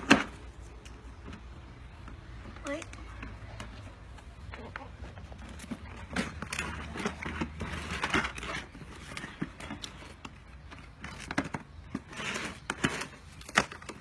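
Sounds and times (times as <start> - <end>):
cardboard rustling: 0.0 - 14.0
tape peeling and tearing: 5.3 - 14.0.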